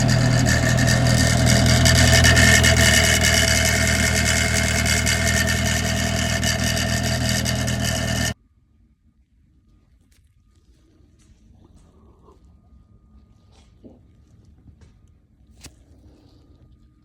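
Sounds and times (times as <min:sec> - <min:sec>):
car engine running: 0:00.0 - 0:08.4
transmission turning: 0:00.0 - 0:08.4.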